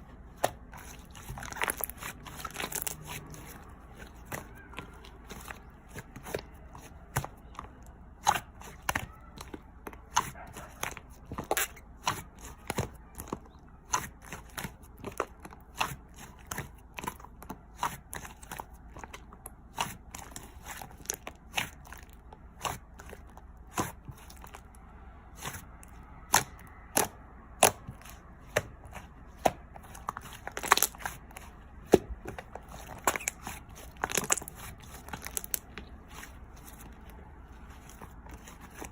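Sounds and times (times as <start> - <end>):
slime clicking and popping: 30.5 - 31.1.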